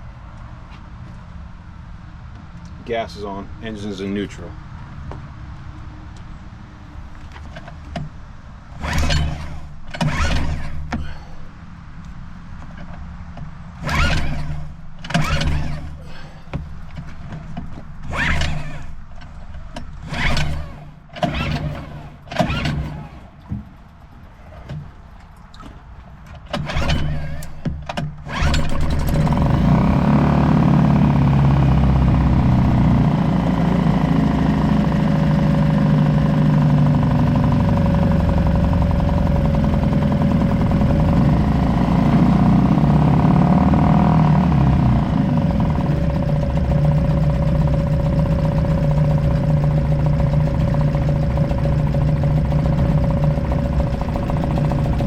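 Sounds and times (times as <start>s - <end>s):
outboard motor running: 8.8s - 11.5s, 13.7s - 25.7s, 26.5s - 55.0s
pull-start cord pulls: 8.8s - 11.5s, 12.6s - 55.0s.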